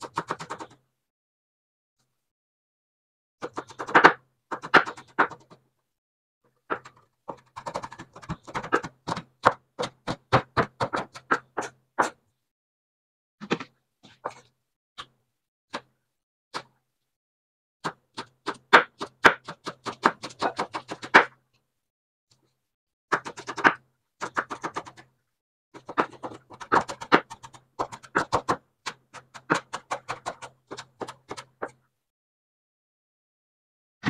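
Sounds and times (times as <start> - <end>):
knife chopping on cutting board: 6.8 - 12.2, 17.8 - 21.4.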